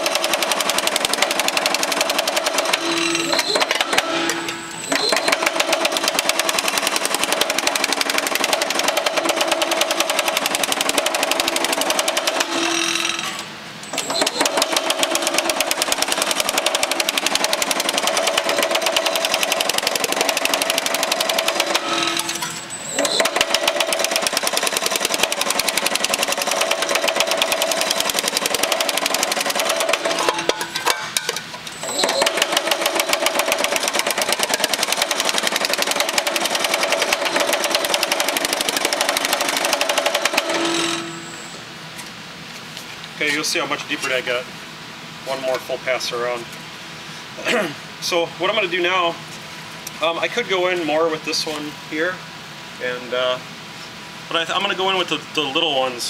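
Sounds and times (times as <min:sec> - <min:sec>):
power hammer hammering sheet metal: 0:00.0 - 0:13.4, 0:14.1 - 0:41.4.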